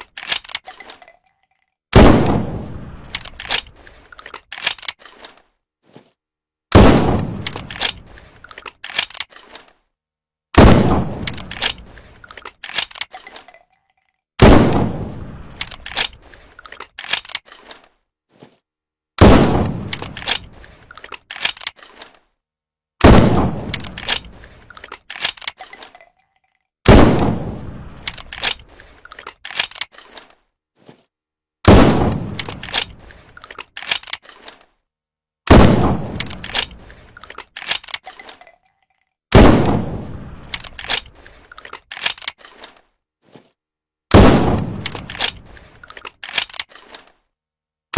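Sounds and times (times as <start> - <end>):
small clicks: 0.0 - 1.8, 3.0 - 5.6, 7.4 - 9.9, 11.1 - 14.2, 15.4 - 18.0, 19.7 - 22.3, 23.6 - 26.7, 27.9 - 30.5, 32.1 - 34.8, 36.0 - 39.1, 40.4 - 42.9, 44.6 - 47.3.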